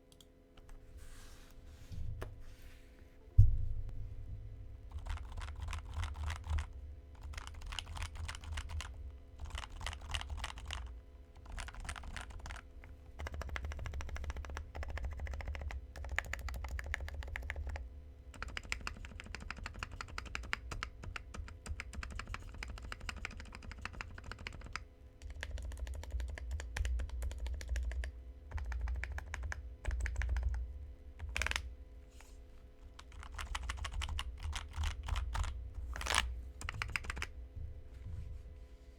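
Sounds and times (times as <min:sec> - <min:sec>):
mechanical keyboard typing: 0:04.9 - 0:30.6, 0:31.2 - 0:31.7, 0:33.0 - 0:37.3.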